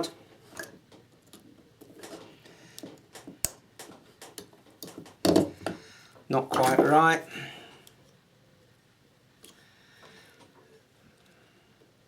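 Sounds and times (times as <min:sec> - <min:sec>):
small clicks and taps: 0:02.8 - 0:05.8.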